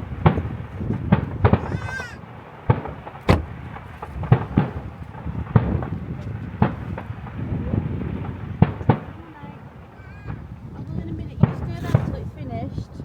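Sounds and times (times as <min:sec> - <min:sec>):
fireworks bangs and cracks: 0:00.0 - 0:12.7
high wavering cry: 0:01.6 - 0:02.2.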